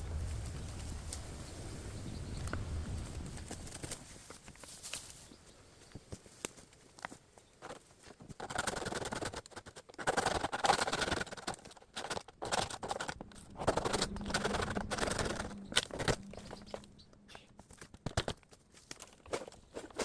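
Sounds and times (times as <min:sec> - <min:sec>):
bamboo stems and leaves rustling: 0:00.0 - 0:09.0, 0:11.3 - 0:20.0.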